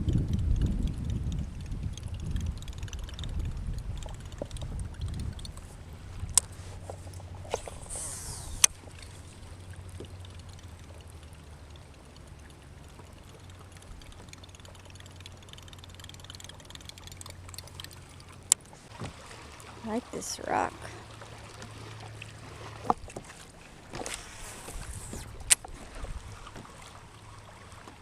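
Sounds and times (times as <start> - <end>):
water lapping against a hull: 0.0 - 28.0
brief high hiss: 7.5 - 8.7.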